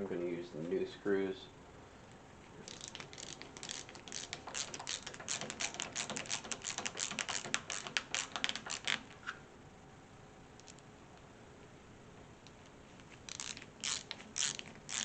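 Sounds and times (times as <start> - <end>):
screwdriver clicking: 2.7 - 9.0.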